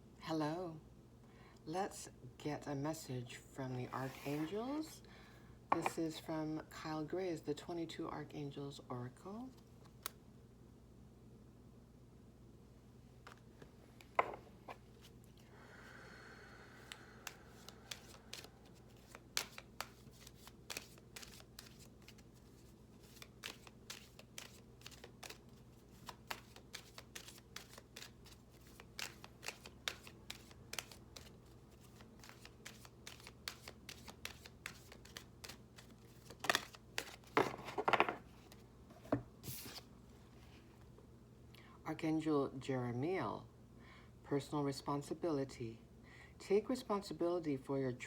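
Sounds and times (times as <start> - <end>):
cards being shuffled: 16.8 - 39.9.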